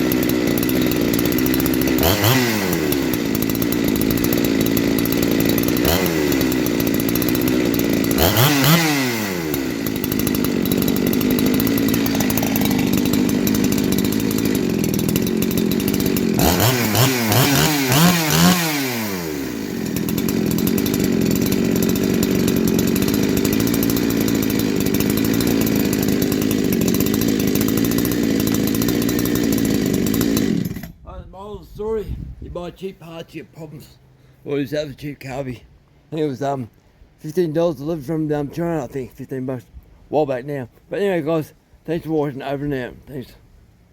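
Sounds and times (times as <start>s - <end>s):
chainsaw engine idling and revving: 0.0s - 31.0s.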